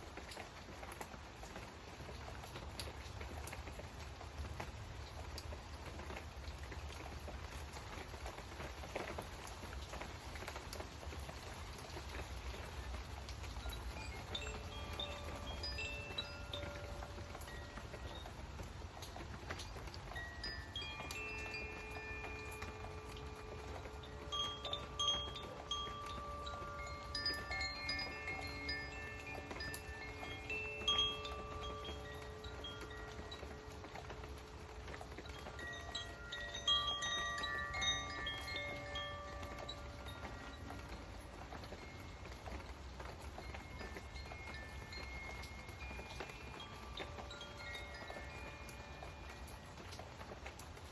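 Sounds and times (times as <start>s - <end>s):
rain hissing: 0.0s - 50.9s
raindrops ticking: 0.0s - 50.9s
wind chimes ringing: 11.4s - 50.9s.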